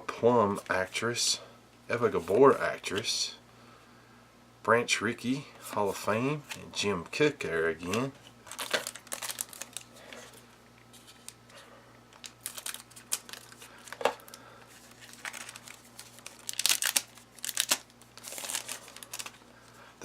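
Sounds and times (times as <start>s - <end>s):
card pack wrapper crinkling and tearing: 8.4s - 11.4s, 12.1s - 19.5s.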